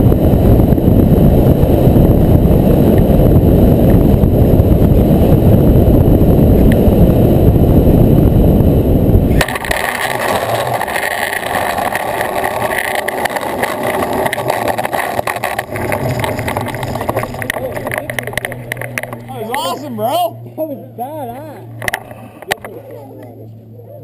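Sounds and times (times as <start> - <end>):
model plane engine buzz: 0.0 - 19.1
wind rush over microphone: 0.0 - 19.7.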